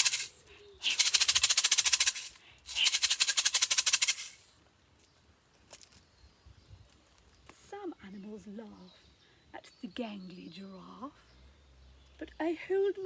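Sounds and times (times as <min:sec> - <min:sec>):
shaker rattling: 0:00.0 - 0:04.5.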